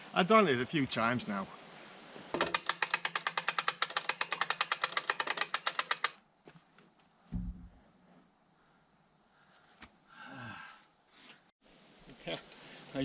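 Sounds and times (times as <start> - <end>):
ratchet clicking: 2.4 - 6.2
dull thump: 7.3 - 7.9.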